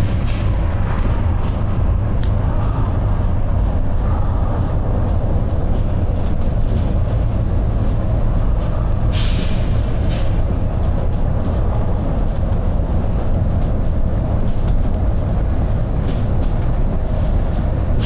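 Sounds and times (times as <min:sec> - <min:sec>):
bus diesel engine droning: 0:00.0 - 0:18.0
air hiss: 0:09.1 - 0:10.2.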